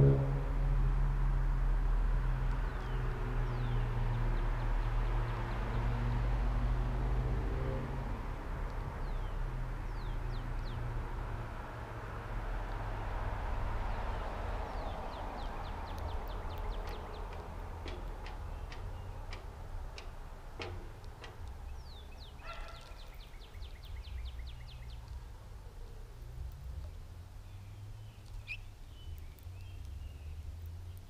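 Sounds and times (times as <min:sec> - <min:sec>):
low rumble: 0:00.0 - 0:02.1
songbirds calling: 0:02.4 - 0:06.2, 0:08.7 - 0:11.3, 0:12.7 - 0:31.0.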